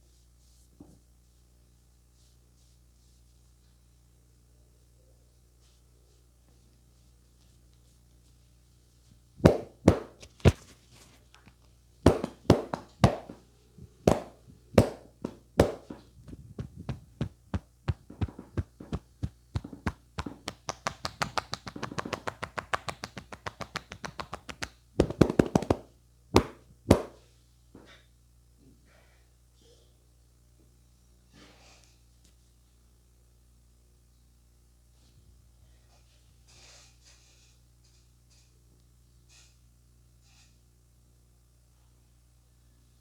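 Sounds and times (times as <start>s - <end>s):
hands slapping and tapping body: 9.4s - 13.4s, 14.0s - 27.2s.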